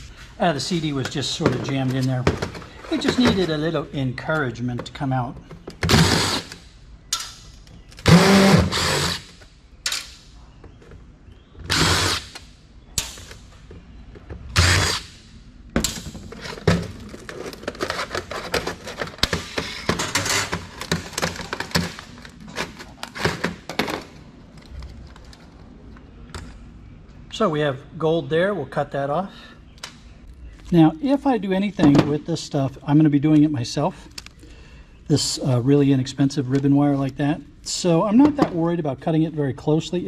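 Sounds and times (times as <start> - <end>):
cordless power driver: 8.0 - 9.3, 11.7 - 12.4.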